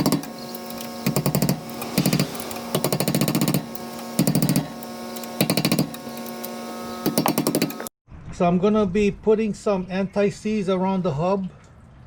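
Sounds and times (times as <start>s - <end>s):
air ratchet clattering: 0.0s - 7.9s.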